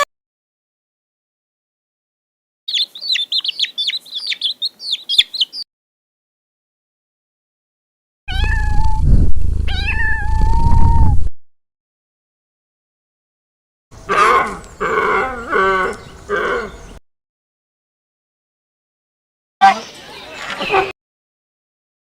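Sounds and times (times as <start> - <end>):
small birds chirping: 2.7 - 5.7, 14.0 - 17.0
cat meowing: 8.3 - 9.0, 9.7 - 11.1
loud low rumble: 8.3 - 11.3.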